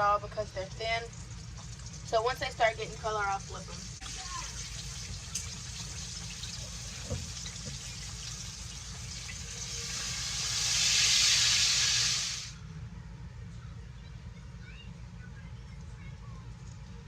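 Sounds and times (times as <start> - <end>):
pork chops sizzling in hot oil: 0.4 - 12.6.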